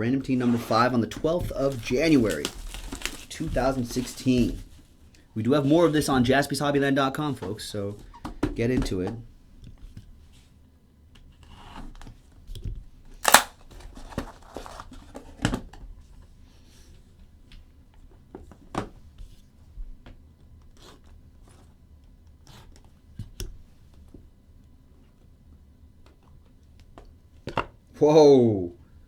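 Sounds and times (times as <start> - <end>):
plastic wrap tearing and crinkling: 1.2 - 4.9, 13.2 - 14.9
sharp snap: 13.2 - 13.6.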